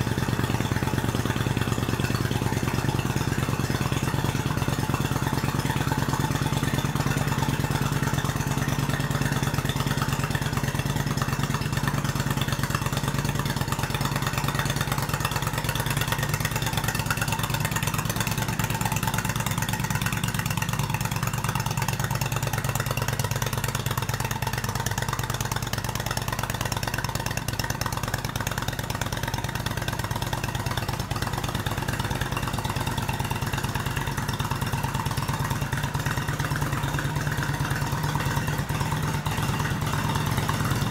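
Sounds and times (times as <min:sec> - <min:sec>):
motorcycle engine idling: 0:00.0 - 0:40.9.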